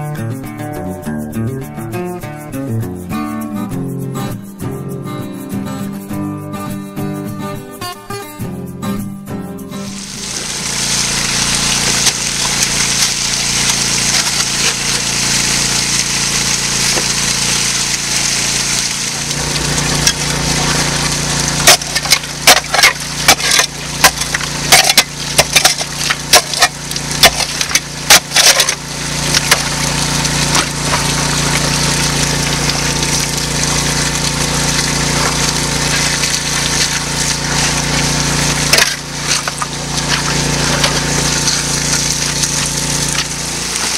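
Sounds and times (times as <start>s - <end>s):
rushing water: 9.9s - 43.9s
small gas engine water pump: 9.9s - 43.9s
rocks striking metal hopper: 19.5s - 33.5s, 34.2s - 43.9s.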